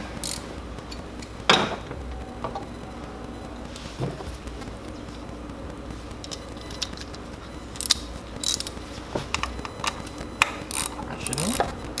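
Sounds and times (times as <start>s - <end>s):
low steady hum: 0.0s - 12.0s
hand tools clicking on metal: 0.2s - 1.4s, 6.2s - 12.0s.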